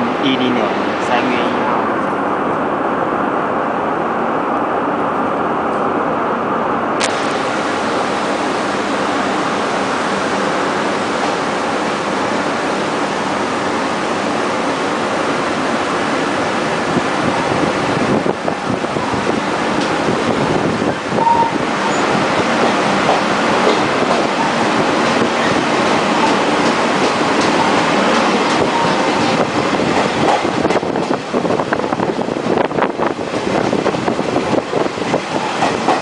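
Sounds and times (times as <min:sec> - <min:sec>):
train rushing past: 0:00.0 - 0:36.0
train wheel squeal: 0:21.2 - 0:22.2, 0:28.7 - 0:29.1.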